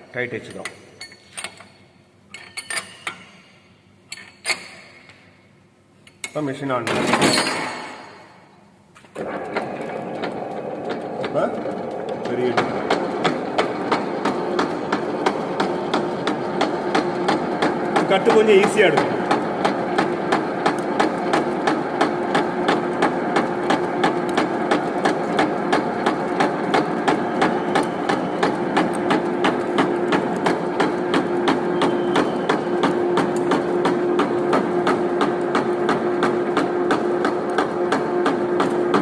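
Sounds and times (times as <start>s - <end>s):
lathe drill boring with hum: 9.2s - 39.0s.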